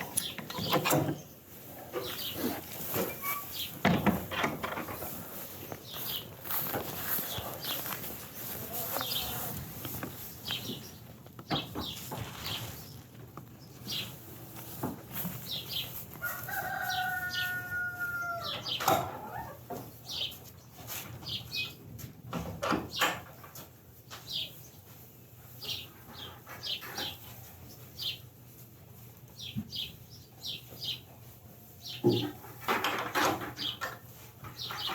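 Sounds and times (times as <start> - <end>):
chickens chirping and clucking: 0.0 - 22.0, 22.8 - 34.9
rooster crowing: 16.2 - 18.6.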